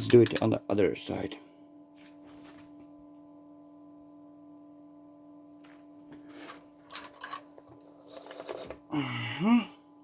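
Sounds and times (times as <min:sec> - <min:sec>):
faint low hum: 0:00.0 - 0:10.0
faint handling noises: 0:01.9 - 0:03.0.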